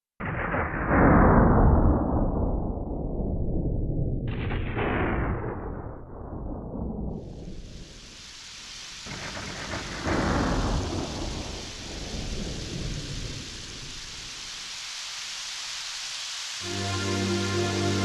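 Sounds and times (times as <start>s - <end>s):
thunder rumbling: 0.2s - 14.7s
steady rain: 7.2s - 18.0s.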